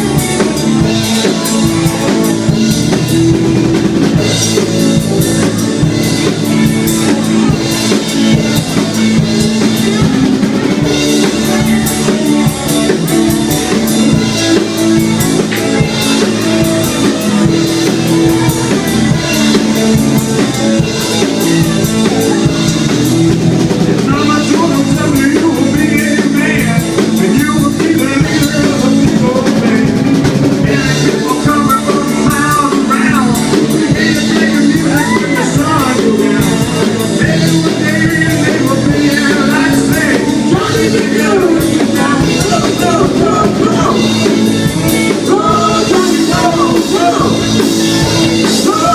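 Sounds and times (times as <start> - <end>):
rock band playing: 0.0 - 48.9.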